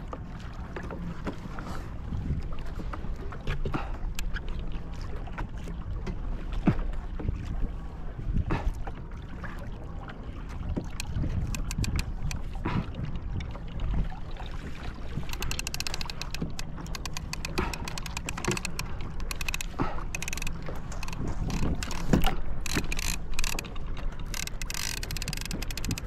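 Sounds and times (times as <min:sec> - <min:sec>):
low rumble of water and wind: 0:00.0 - 0:26.0
fishing reel clicking rapidly: 0:11.5 - 0:12.3, 0:15.3 - 0:26.0.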